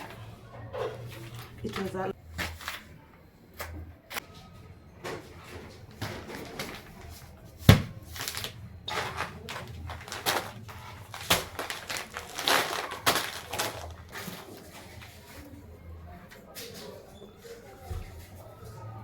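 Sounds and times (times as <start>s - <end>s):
shopping bags rustling: 0.0s - 3.0s, 5.0s - 15.7s.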